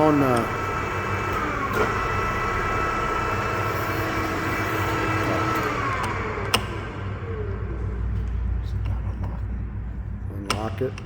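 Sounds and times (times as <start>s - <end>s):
drill motor whine: 0.0s - 7.9s.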